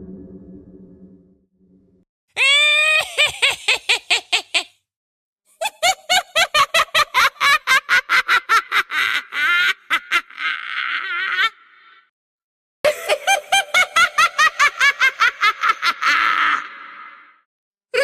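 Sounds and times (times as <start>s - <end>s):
high-pitched witch's cackle: 2.4s - 4.8s, 5.5s - 11.6s, 12.9s - 17.3s.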